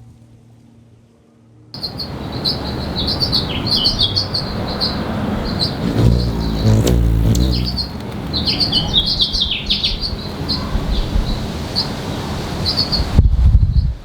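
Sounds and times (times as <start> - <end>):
hummingbird chirping: 5.7 - 8.0
low rumble: 5.8 - 7.9.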